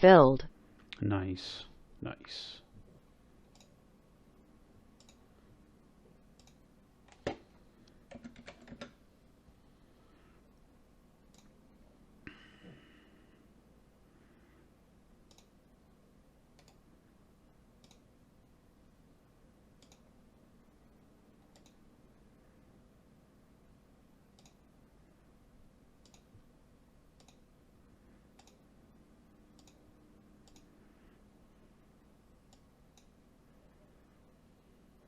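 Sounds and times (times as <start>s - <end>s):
low steady hum: 0.0s - 35.0s
faint sharp clicks: 5.0s - 5.2s, 6.4s - 7.2s, 15.3s - 15.5s, 19.8s - 20.1s, 24.4s - 24.6s, 26.0s - 26.3s, 27.2s - 27.4s, 28.4s - 28.6s, 29.6s - 29.8s, 30.4s - 30.7s.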